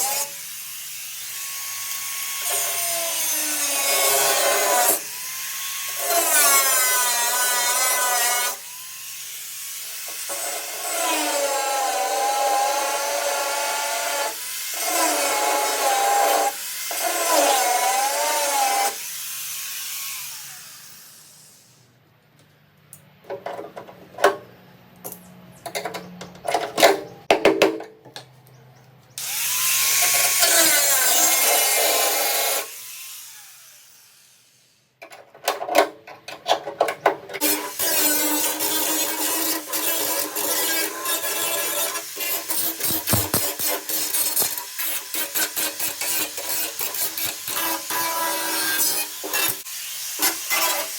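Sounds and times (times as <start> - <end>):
power tool cutting metal: 0.0 - 21.8, 29.2 - 34.8, 37.4 - 50.9
sharp knocks and clatter: 42.8 - 44.6.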